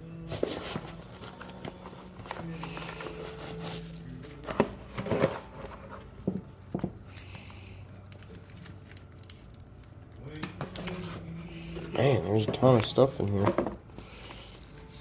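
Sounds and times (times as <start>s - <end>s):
objects knocking and clattering: 13.4s - 13.8s.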